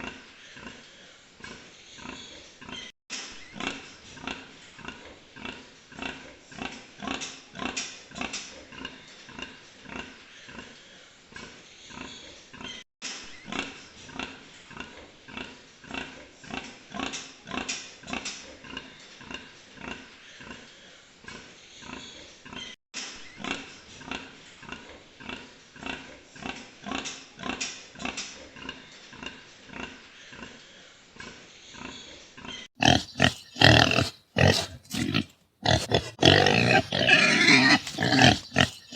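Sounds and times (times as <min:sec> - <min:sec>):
pig grunting: 0:32.8 - 0:38.9.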